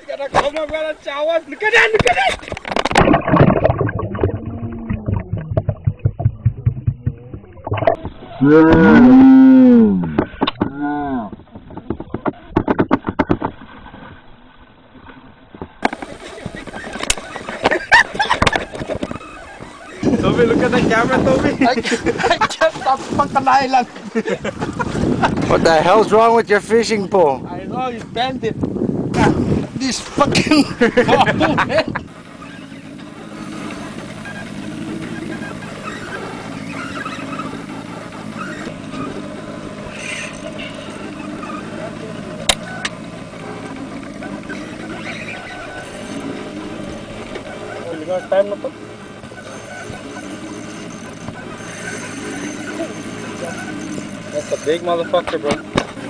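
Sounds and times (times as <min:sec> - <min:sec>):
engine hum: 0:01.9 - 0:23.0, 0:28.0 - 0:56.0
sharp knocks: 0:02.7 - 0:08.1
faint voices: 0:40.2 - 0:55.7.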